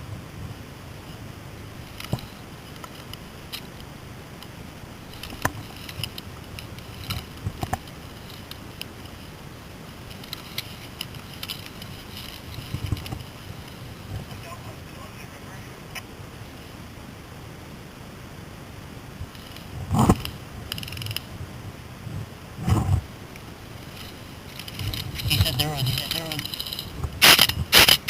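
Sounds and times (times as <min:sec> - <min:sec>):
wind rumble on microphone: 0:00.0 - 0:15.2, 0:16.2 - 0:28.0
sharp clicks and snaps: 0:23.4 - 0:28.0.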